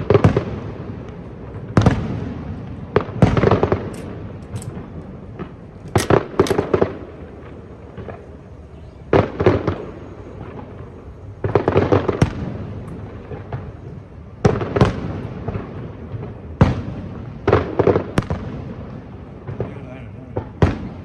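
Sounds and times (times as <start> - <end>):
firework shells bursting: 3.1 - 8.2.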